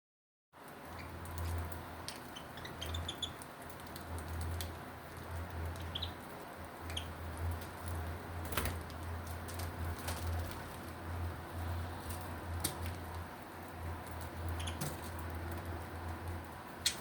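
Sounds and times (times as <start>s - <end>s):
budgies chirping: 0.9s - 3.5s, 5.7s - 6.2s, 6.9s - 7.2s, 14.5s - 15.0s
small clicks of pecking: 3.3s - 4.8s.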